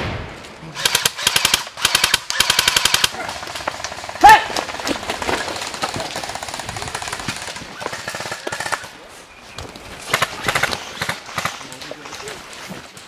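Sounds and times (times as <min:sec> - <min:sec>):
airsoft guns firing automatic: 0:00.8 - 0:09.0, 0:10.1 - 0:12.3.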